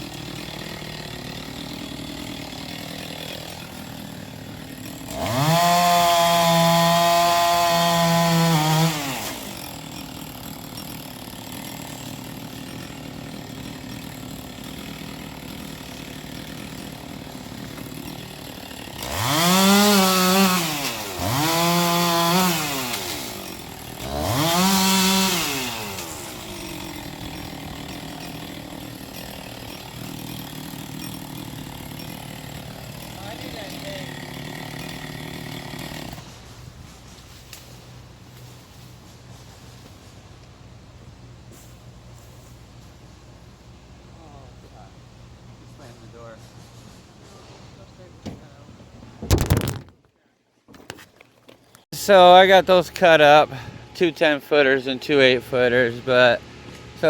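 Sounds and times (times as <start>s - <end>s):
chainsaw revving and idling: 0.0s - 36.5s, 52.0s - 57.0s.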